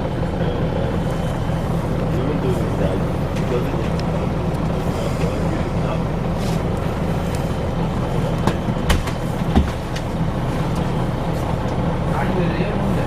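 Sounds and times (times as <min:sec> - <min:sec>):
bus engine droning: 0:00.0 - 0:13.0
sharp knocks: 0:08.4 - 0:10.1.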